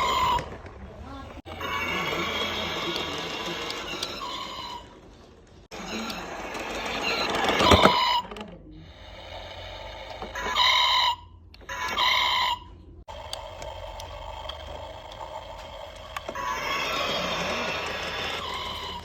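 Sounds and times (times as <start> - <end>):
buzzy high-pitched toy tone: 16.2 - 19.0.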